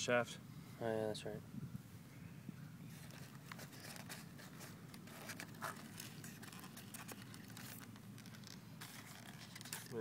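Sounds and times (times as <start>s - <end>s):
foam crinkling and clicks: 3.0s - 10.0s.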